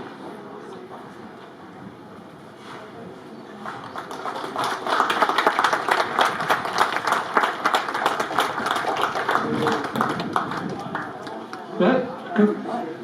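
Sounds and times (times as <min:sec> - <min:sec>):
crowd applauding: 0:03.6 - 0:11.7.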